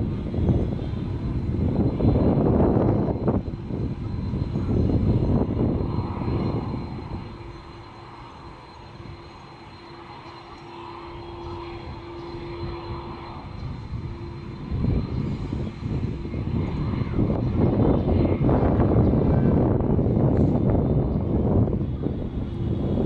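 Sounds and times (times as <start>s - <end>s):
jet engines rumbling: 0.0s - 23.0s.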